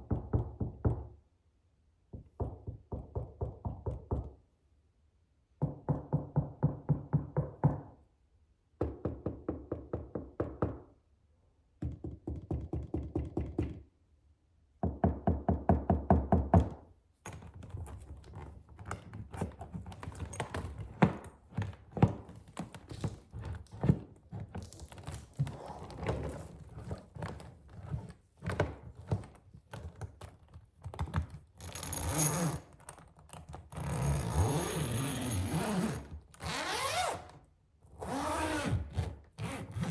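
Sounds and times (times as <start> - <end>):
scratching on suitcase: 17.5 - 37.1
zipper rasp: 21.9 - 28.2, 31.6 - 32.7, 33.8 - 37.3, 38.0 - 39.9.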